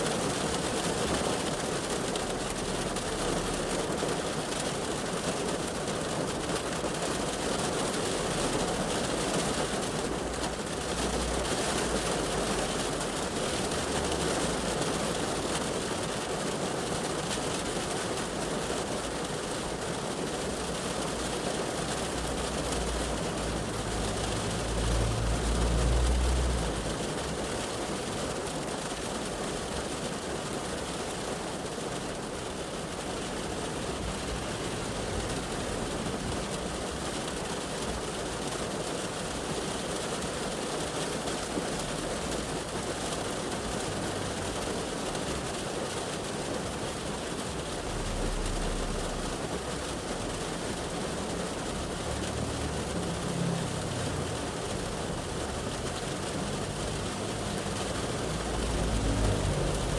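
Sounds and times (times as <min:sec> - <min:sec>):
rain on a car roof: 0:00.0 - 0:59.9
passing traffic: 0:06.1 - 0:16.7, 0:20.2 - 0:30.0, 0:32.0 - 0:59.9
heavy vehicle low rumble: 0:22.0 - 0:28.0, 0:46.5 - 0:59.9.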